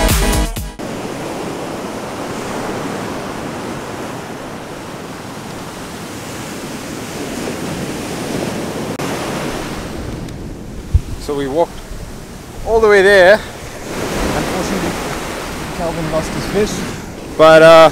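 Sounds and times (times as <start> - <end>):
ocean surf breaking: 0.8 - 17.9
wind on microphone: 0.8 - 17.9.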